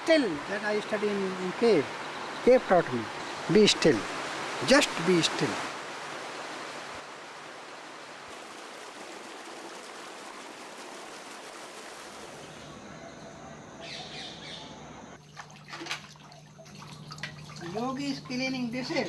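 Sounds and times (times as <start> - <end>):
birds chirping: 0.4 - 5.5, 12.4 - 15.2
waterfall rushing: 0.4 - 10.3.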